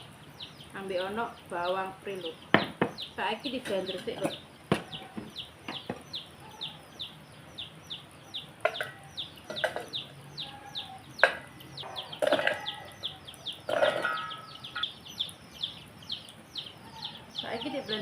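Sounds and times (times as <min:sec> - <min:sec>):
chickens clucking: 0:00.0 - 0:18.0
chicks peeping: 0:00.0 - 0:18.0
sharp knocks and clatter: 0:02.5 - 0:03.0, 0:03.6 - 0:06.1, 0:08.6 - 0:10.0, 0:11.2 - 0:11.5, 0:13.7 - 0:14.9.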